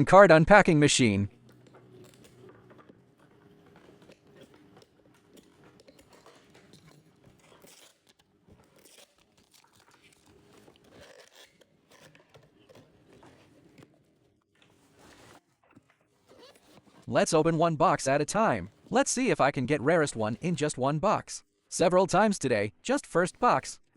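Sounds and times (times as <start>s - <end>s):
clicks and rustles: 1.3s - 17.1s
packaging crinkling: 1.3s - 17.1s
packaging tearing: 1.3s - 17.1s.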